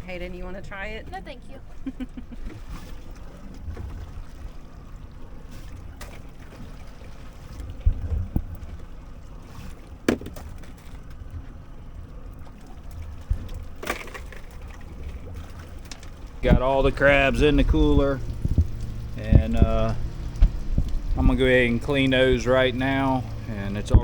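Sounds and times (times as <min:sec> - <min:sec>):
water sloshing and trickling: 0:00.0 - 0:24.0
low rumble: 0:16.2 - 0:24.0
sharp knocks: 0:17.8 - 0:21.8.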